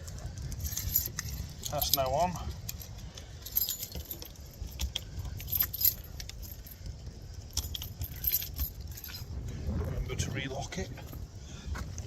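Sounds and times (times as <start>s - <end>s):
wind on microphone: 0.0s - 12.0s
keys jangling: 0.3s - 9.3s.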